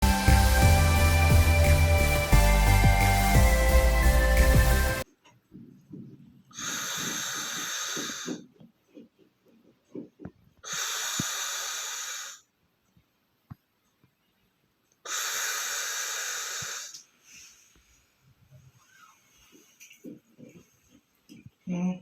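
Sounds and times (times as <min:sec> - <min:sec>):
person snoring with hissing breaths: 0:06.6 - 0:08.5, 0:10.6 - 0:12.5, 0:15.1 - 0:17.5.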